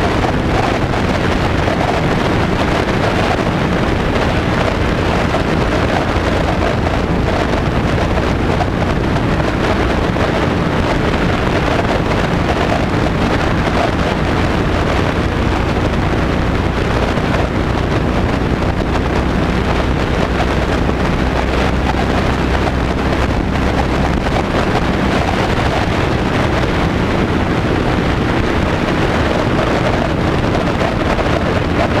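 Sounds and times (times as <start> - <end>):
motorcycle engine running: 0.0 - 32.0
wind buffeting camera: 0.0 - 32.0.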